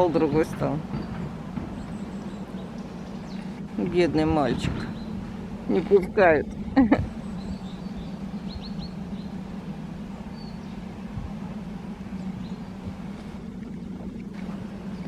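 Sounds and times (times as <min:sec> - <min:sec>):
steady low hum: 0:00.0 - 0:15.0
faint bird chirps: 0:07.1 - 0:14.0.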